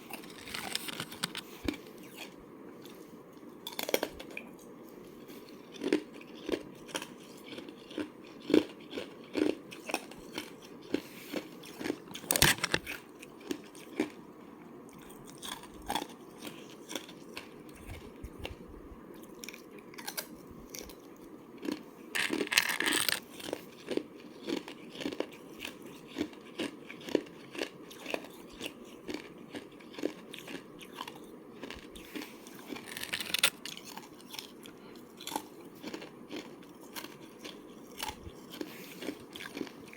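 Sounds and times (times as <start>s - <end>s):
person crunching ice: 0.1s - 2.3s, 11.6s - 13.8s, 21.6s - 39.9s.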